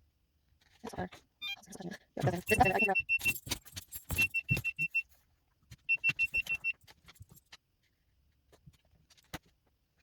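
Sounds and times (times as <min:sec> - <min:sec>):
rapid electronic beeping: 0:02.4 - 0:03.4.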